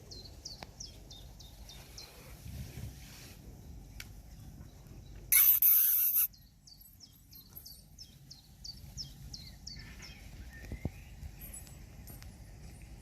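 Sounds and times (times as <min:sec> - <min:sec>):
bird chirping: 0:00.0 - 0:02.3, 0:04.3 - 0:11.8.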